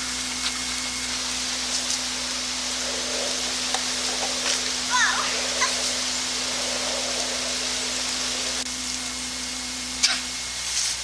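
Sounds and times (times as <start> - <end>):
low hum: 0.0 - 11.0
steady hiss: 0.0 - 11.0.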